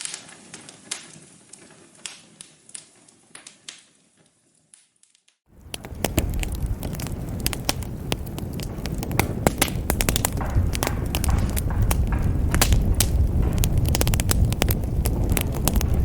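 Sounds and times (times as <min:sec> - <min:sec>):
wood fire crackling: 0:00.0 - 0:16.0
low rumble of flames: 0:05.5 - 0:16.0.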